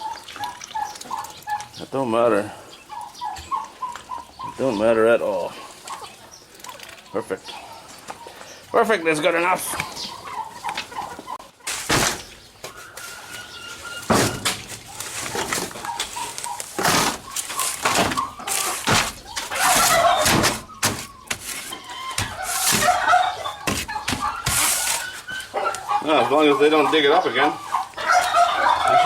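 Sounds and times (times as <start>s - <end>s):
poultry calling: 0.0s - 29.0s
knocks thuds and scraping: 11.6s - 25.3s.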